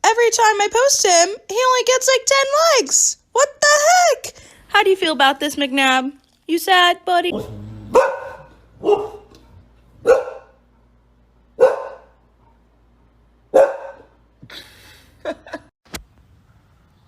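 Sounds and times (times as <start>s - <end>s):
dog barking: 7.4s - 10.9s, 11.6s - 12.2s, 13.5s - 14.2s.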